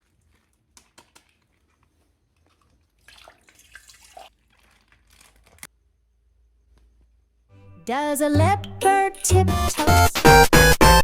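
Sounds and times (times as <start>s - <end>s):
water splashing and dripping: 2.4s - 5.7s.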